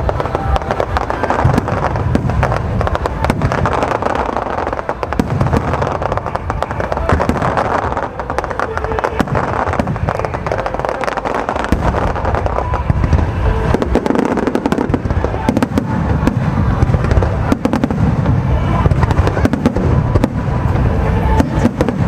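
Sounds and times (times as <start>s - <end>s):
fireworks bangs and crackles: 0.0s - 22.0s.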